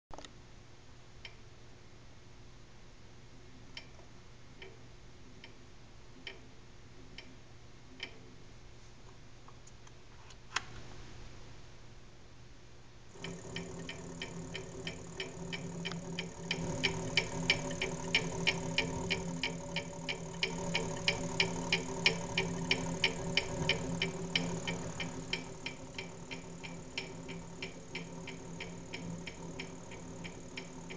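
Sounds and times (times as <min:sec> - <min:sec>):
lathe humming: 0:13.1 - 0:30.9
sharp regular ticking: 0:13.1 - 0:30.9.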